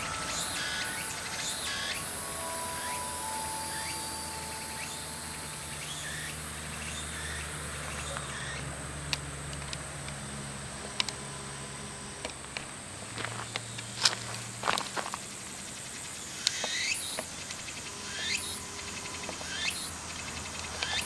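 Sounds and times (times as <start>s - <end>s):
insects chirping: 0.0s - 9.5s, 15.2s - 21.0s.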